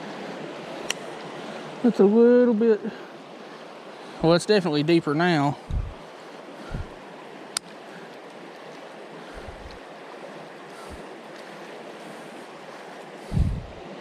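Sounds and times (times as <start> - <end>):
creek water running: 0.0 - 14.0
soft low thumps: 5.6 - 6.0, 13.3 - 13.8.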